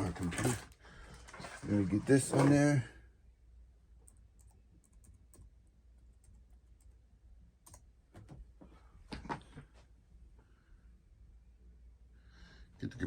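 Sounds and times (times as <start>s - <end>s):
computer keys clicking: 4.1s - 5.5s, 7.6s - 8.4s.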